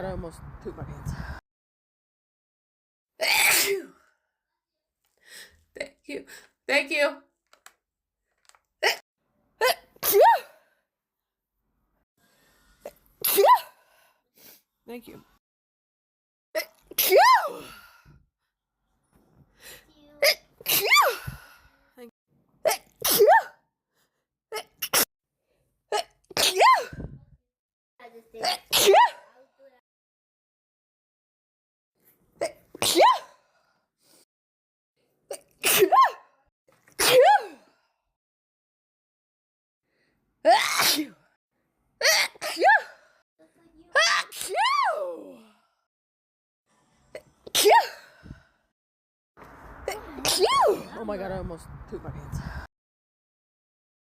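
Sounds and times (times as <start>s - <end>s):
woman sneezing: 3.2s - 4.0s, 9.6s - 10.5s, 13.2s - 13.6s, 16.6s - 17.7s, 20.2s - 21.3s, 22.7s - 23.6s, 26.0s - 27.1s, 28.4s - 29.3s, 32.4s - 33.3s, 35.3s - 36.2s, 37.0s - 37.6s, 40.5s - 41.2s, 42.0s - 42.9s, 47.5s - 48.0s.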